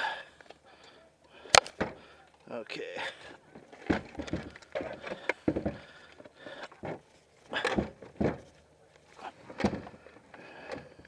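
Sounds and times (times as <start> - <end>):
hardware knocking and clunking: 1.6 - 2.1, 3.5 - 8.6, 9.4 - 11.0.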